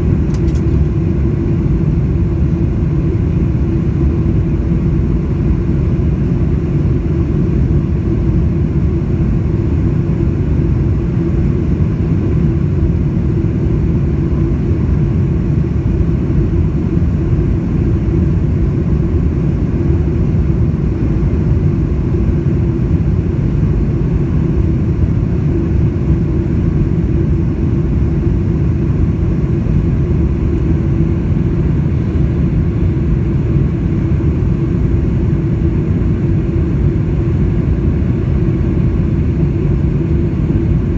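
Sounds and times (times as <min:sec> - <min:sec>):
constant hum: 0:00.0 - 0:40.9
jet engine rumble: 0:00.0 - 0:40.9.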